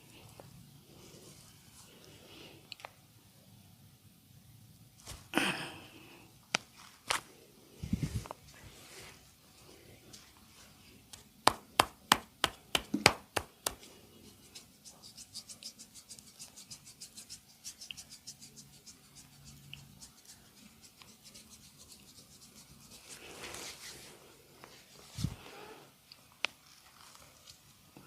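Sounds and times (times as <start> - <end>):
hand slaps on skin: 11.1 - 13.8.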